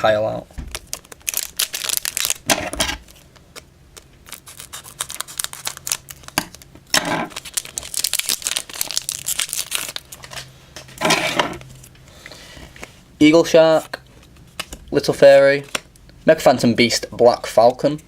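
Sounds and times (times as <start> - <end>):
foil pack crinkling and tearing: 0.7 - 10.5.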